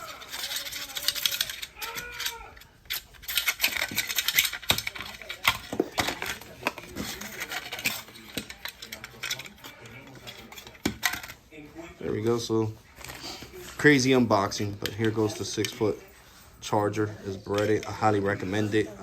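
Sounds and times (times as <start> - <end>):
sharp packaging clicks: 0.0 - 11.4
packaging crinkling and rustling: 0.0 - 11.5.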